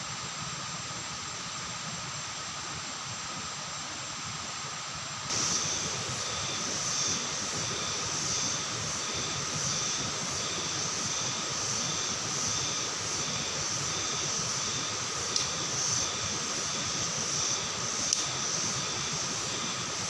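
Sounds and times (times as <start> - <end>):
insect chorus trilling: 4.6 - 20.0.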